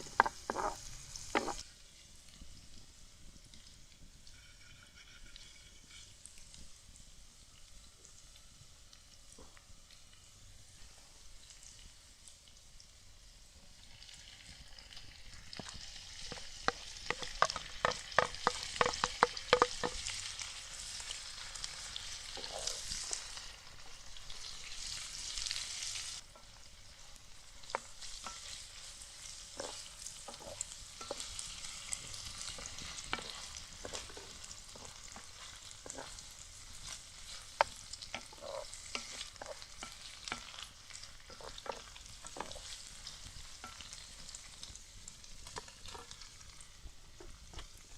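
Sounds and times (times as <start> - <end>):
utensil tapping a pan: 0.0 - 1.6, 15.6 - 20.2
food sizzling in a pan: 0.0 - 47.9.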